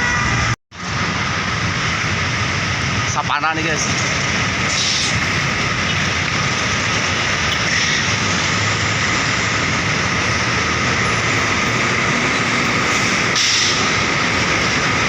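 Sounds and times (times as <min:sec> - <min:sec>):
road traffic noise: 0:00.0 - 0:15.0.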